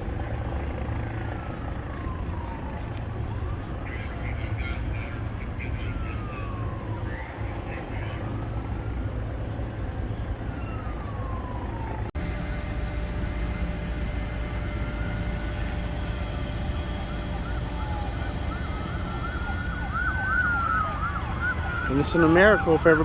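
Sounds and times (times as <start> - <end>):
emergency sirens wailing: 0.0 - 23.0.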